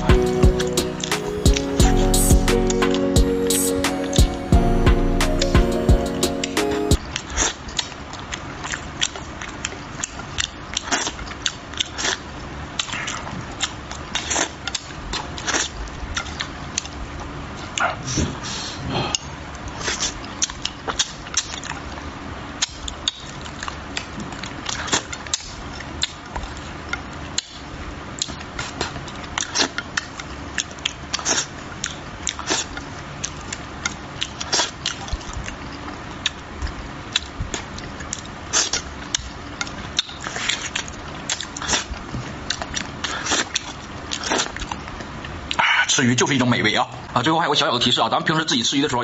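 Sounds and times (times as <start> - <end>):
person chewing wetly: 7.0 - 18.1, 19.1 - 45.6.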